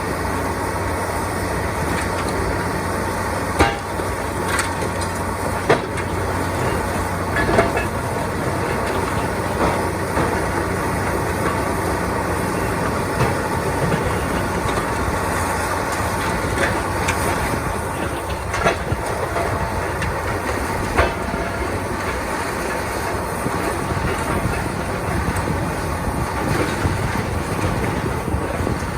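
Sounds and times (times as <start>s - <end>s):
excavator running: 0.0s - 28.9s
debris knocking and cracking: 3.6s - 12.0s.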